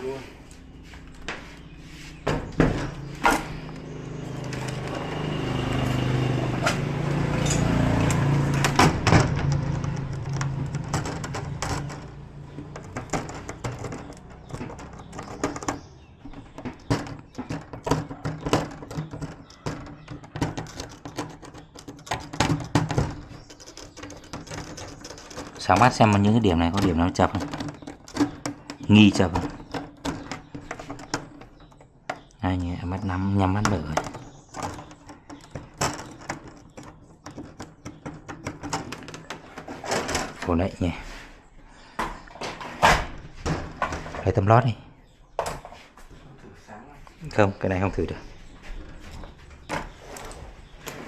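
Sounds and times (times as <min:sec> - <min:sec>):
small parts and tools clicking: 0:07.3 - 0:33.0, 0:33.6 - 0:40.4.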